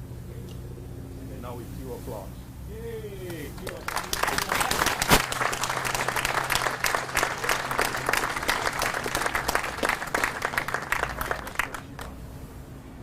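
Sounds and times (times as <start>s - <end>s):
crowd applauding: 3.3s - 12.2s.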